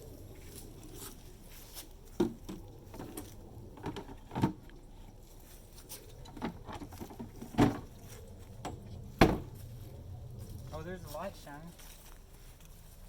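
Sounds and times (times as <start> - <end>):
light knocks and clunks: 2.1 - 4.8, 6.2 - 9.6.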